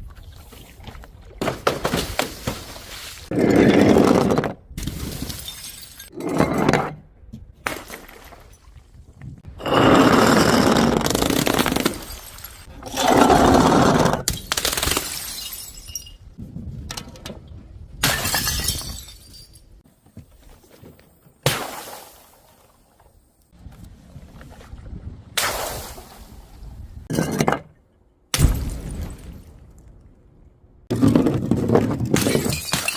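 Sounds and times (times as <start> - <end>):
glass breaking and shattering: 5.1 - 6.2, 14.3 - 16.2, 18.0 - 19.7, 32.1 - 32.9.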